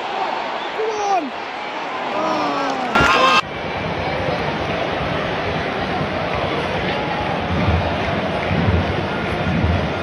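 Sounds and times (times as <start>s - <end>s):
crowd roaring: 1.8s - 3.4s.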